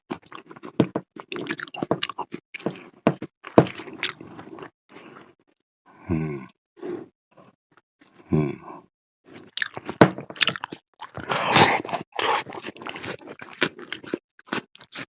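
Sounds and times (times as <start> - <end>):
wet chewing and lip smacking: 0.1 - 5.2, 9.4 - 15.0
person humming mm: 6.0 - 6.5, 8.2 - 8.9.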